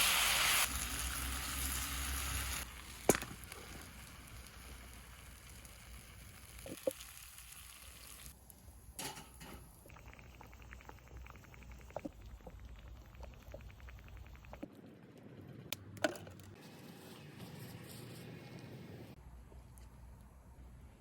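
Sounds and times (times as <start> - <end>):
food sizzling and bubbling: 0.0 - 14.7.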